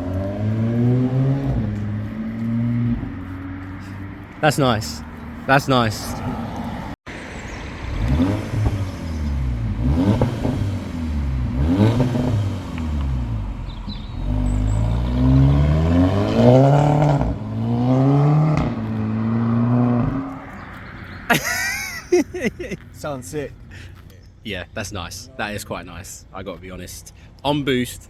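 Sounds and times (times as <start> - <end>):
car engine revving: 0.0 - 7.0, 7.7 - 21.2.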